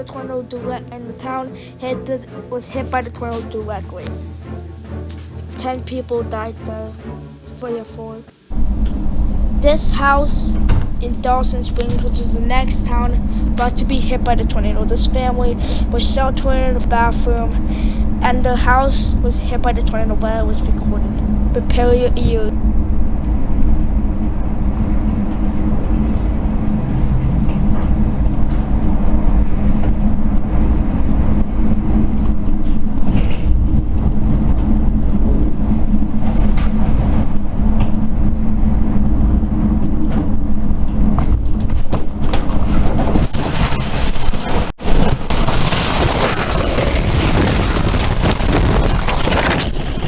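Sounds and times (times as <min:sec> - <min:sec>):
tornado roar: 0:08.5 - 0:50.0
debris hitting house: 0:42.8 - 0:50.0.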